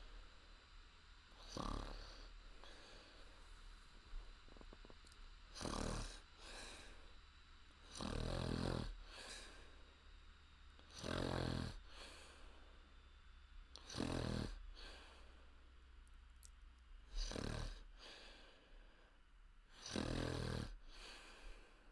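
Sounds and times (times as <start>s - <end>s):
woman snoring: 1.4s - 3.2s, 5.5s - 7.0s, 7.8s - 9.6s, 10.9s - 12.3s, 13.8s - 15.1s, 17.1s - 18.2s, 19.7s - 21.4s
soft breaths: 1.4s - 8.0s, 8.9s - 10.4s, 11.8s - 13.0s, 14.6s - 15.8s, 17.1s - 19.9s, 20.7s - 21.9s.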